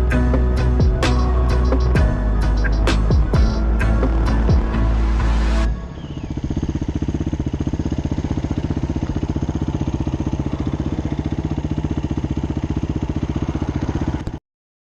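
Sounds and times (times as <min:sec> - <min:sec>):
motorcycle engine idling: 0:00.0 - 0:14.4.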